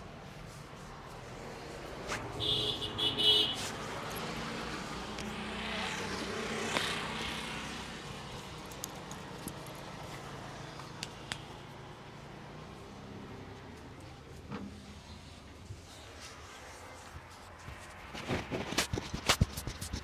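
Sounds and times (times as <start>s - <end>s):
vehicle passing on road: 0.1s - 18.7s.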